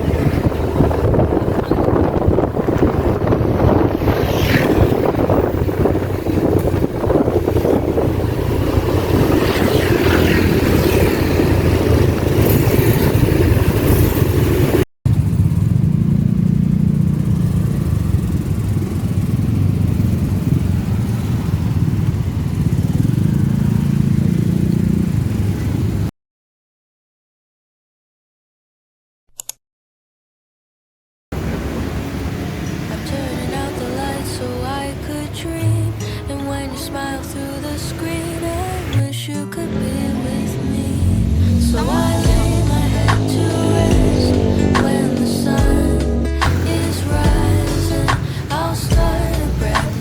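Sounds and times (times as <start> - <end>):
wind on microphone: 0.0 - 15.6, 17.6 - 24.0, 39.8 - 50.0
vehicle and road noise: 0.0 - 26.1, 31.3 - 50.0
low engine drone: 39.6 - 50.0.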